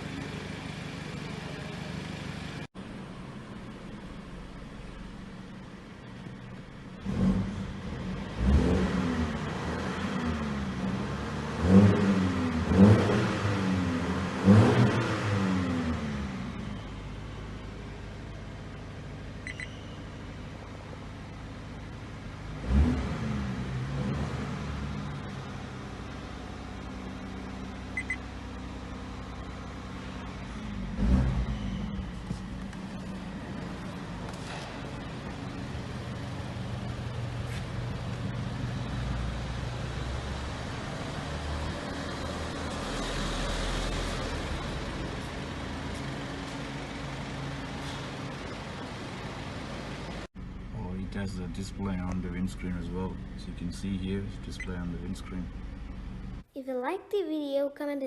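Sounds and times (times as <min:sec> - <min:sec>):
car engine revving: 0:06.9 - 0:16.8, 0:22.2 - 0:56.4
short high beeps: 0:19.5 - 0:20.0, 0:28.0 - 0:28.2.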